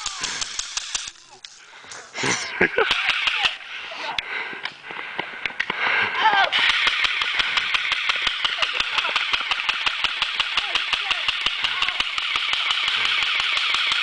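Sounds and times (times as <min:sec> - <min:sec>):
airsoft gun firing full auto: 0:00.0 - 0:01.2, 0:02.9 - 0:03.6, 0:06.5 - 0:14.0.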